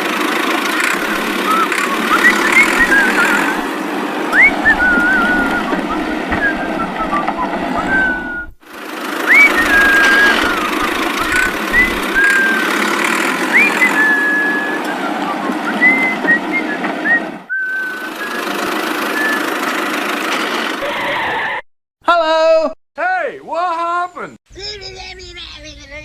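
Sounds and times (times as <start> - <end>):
cartoon vehicle engine: 0.0 - 21.6
short whistle-like tones: 1.2 - 3.6, 4.3 - 8.6, 9.2 - 19.5.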